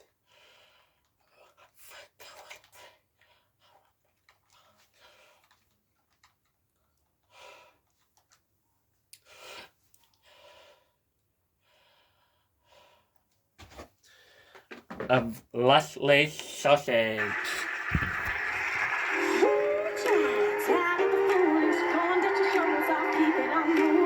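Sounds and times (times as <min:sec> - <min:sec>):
faint short breaths: 0:14.0 - 0:14.7.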